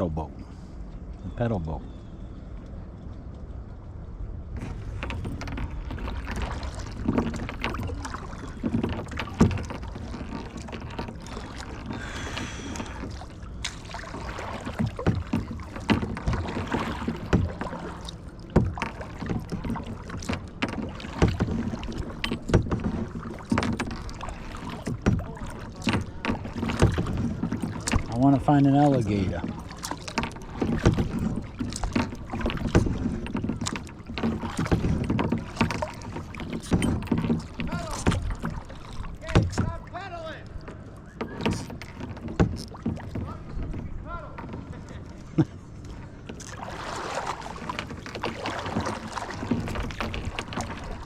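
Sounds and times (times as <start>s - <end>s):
paddle splashing in water: 2.4s - 51.0s
short knocks: 4.6s - 39.9s, 40.6s - 44.9s.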